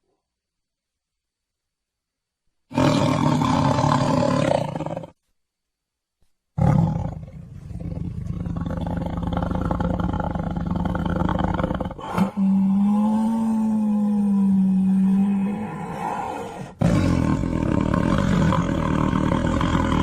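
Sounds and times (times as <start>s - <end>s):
tiger roaring: 2.7s - 5.2s, 6.6s - 20.0s.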